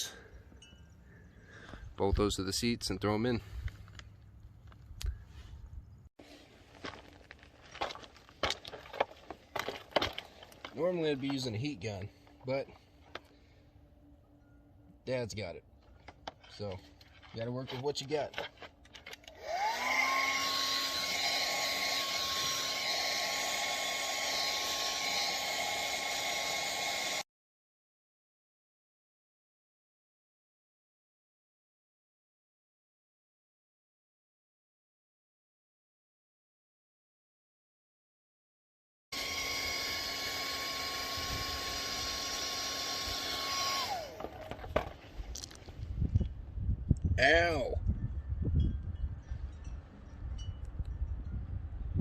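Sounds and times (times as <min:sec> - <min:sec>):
hair dryer blowing: 0:19.4 - 0:27.2, 0:39.2 - 0:44.5.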